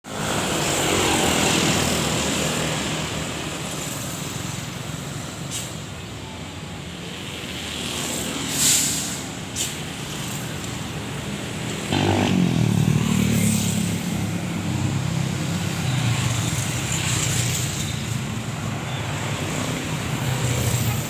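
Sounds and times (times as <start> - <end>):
roadside traffic noise: 0.0 - 21.0
sharp air hiss: 8.4 - 10.3.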